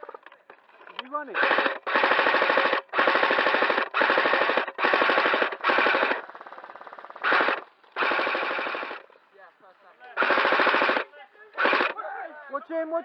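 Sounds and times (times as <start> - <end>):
faint rapid firing: 1.1 - 9.2, 10.2 - 12.0
airsoft rifle firing bursts: 1.2 - 9.2, 10.2 - 12.0.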